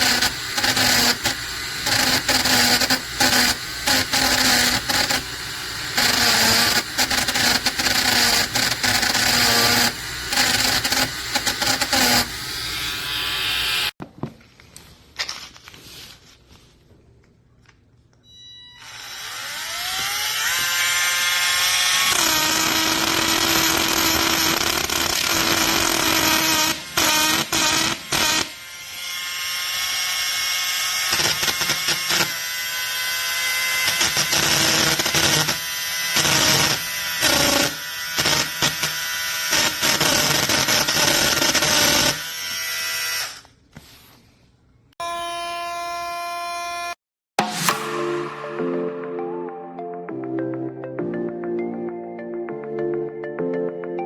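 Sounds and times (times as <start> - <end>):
rotary tool whining and grinding: 0.0 - 14.0, 18.6 - 43.9.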